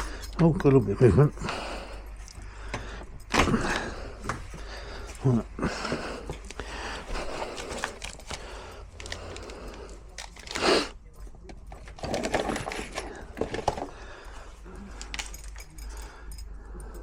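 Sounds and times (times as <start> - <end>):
door lock and handle rattling: 11.2 - 14.2.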